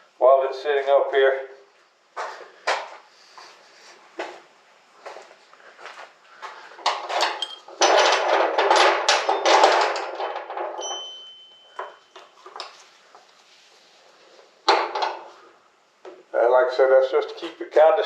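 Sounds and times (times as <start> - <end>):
metal tools clattering: 6.9 - 12.3
brief high ring: 10.9 - 12.2.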